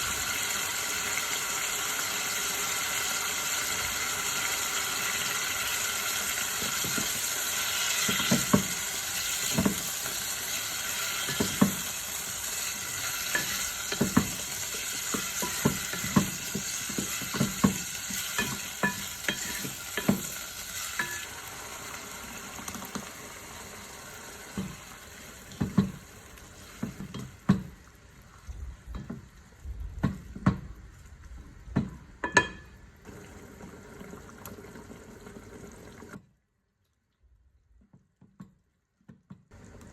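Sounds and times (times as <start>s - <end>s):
food sizzling in oil: 0.0s - 28.5s
spoon knocking against pot: 11.3s - 11.9s, 13.3s - 20.3s, 31.8s - 32.7s.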